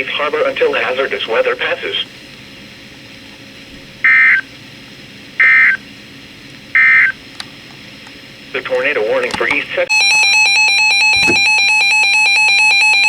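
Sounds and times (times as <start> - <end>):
faint radio hiss: 0.0 - 2.8, 8.2 - 9.9.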